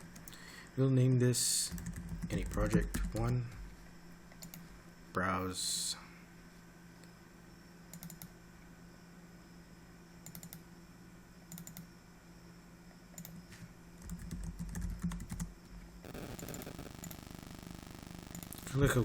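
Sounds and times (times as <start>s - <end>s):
computer keyboard typing: 1.7s - 3.3s, 8.0s - 8.3s, 10.3s - 10.6s, 11.5s - 11.9s, 13.2s - 13.4s, 14.0s - 15.5s, 16.1s - 18.7s.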